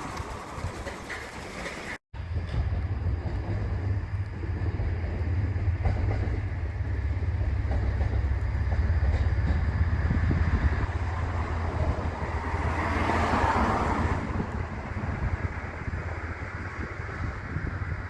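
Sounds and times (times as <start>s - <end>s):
wheels clicking on track: 0.0s - 12.3s
train rumbling on rails: 0.0s - 18.0s.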